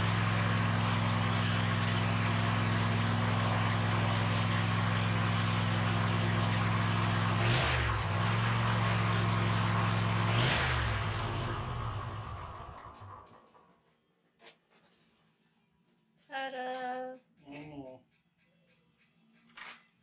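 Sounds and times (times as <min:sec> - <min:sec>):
mower engine running: 0:00.0 - 0:13.4.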